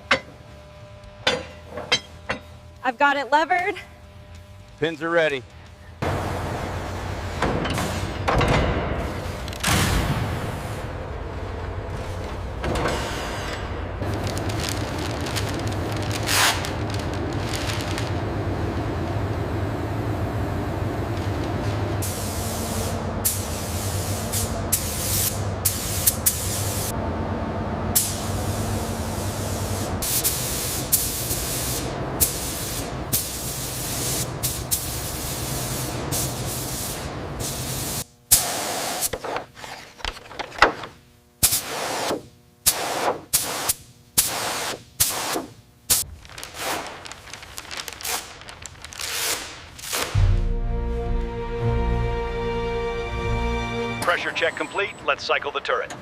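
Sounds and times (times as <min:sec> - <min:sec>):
low hum: 0:05.4 - 0:24.8, 0:50.2 - 0:55.3
hissing spray: 0:22.0 - 0:26.9.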